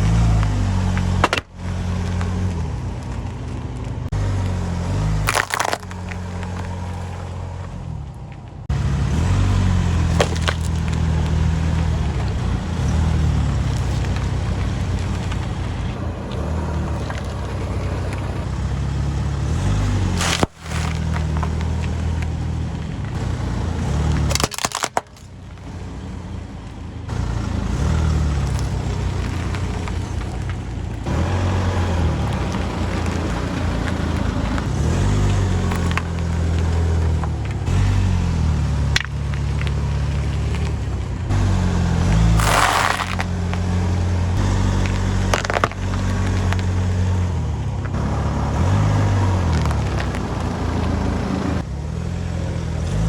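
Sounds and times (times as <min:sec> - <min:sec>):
objects cracking under tyres: 0:00.0 - 0:08.7, 0:09.3 - 0:51.7
car engine running: 0:00.0 - 0:53.0.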